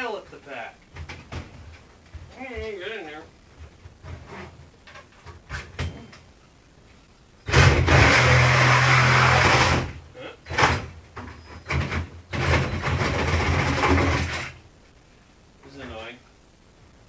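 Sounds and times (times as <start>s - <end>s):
reciprocating saw cutting: 7.5s - 9.9s.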